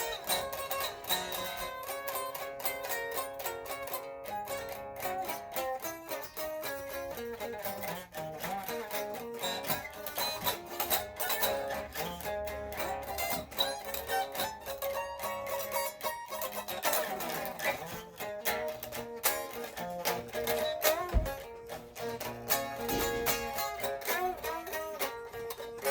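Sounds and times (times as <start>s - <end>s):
plucked string instrument music: 0.0s - 25.9s
low thump: 21.0s - 21.6s.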